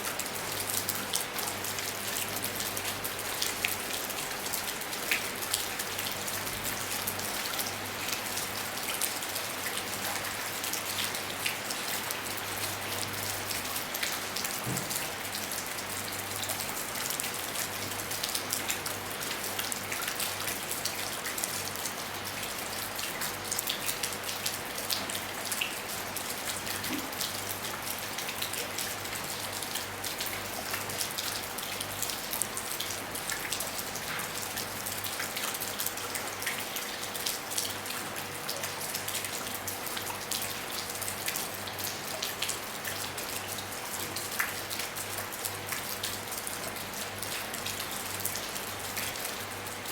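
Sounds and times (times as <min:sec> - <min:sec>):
rain falling on a roof: 0:00.0 - 0:49.9.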